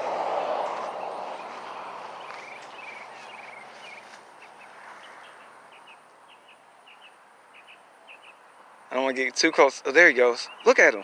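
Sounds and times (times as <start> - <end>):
bird chirps and trills: 1.0 - 8.6, 10.1 - 11.0.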